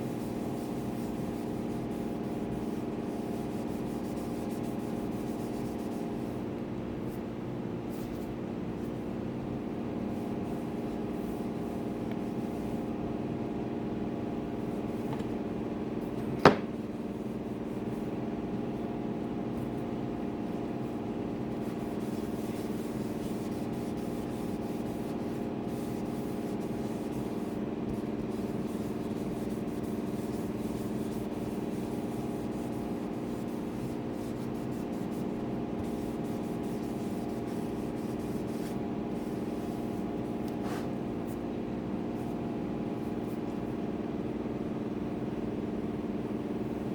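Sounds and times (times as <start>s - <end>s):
steady multi-tone hum: 0.0s - 46.9s
faint rubbing on wood: 21.5s - 41.0s.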